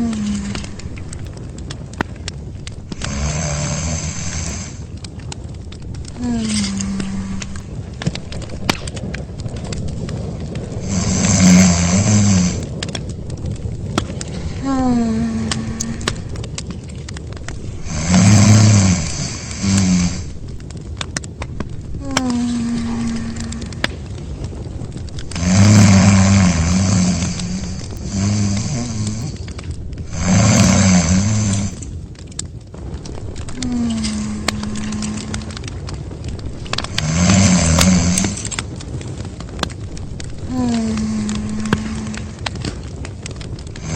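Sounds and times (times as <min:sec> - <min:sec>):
steady hiss and crackle: 0:00.0 - 0:43.9
loud drawn-out snore: 0:03.0 - 0:04.8, 0:10.8 - 0:12.7, 0:14.5 - 0:16.4, 0:17.8 - 0:20.4, 0:22.0 - 0:23.8, 0:25.3 - 0:29.4, 0:30.1 - 0:31.8, 0:33.6 - 0:35.6, 0:36.8 - 0:38.4, 0:40.5 - 0:42.4.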